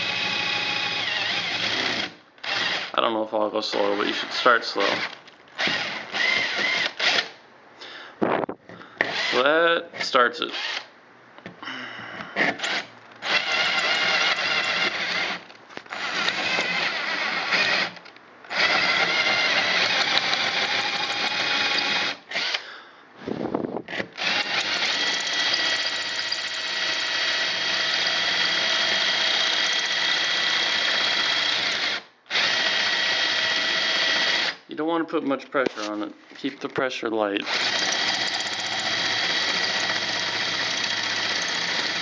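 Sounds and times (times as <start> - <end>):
drill hole saw cutting metal: 0.0 - 3.0, 12.4 - 22.6, 24.2 - 34.6, 37.4 - 42.0.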